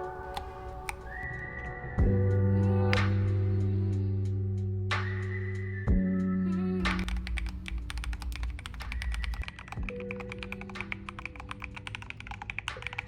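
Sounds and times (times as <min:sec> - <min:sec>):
mechanical keyboard typing: 0:06.9 - 0:13.0.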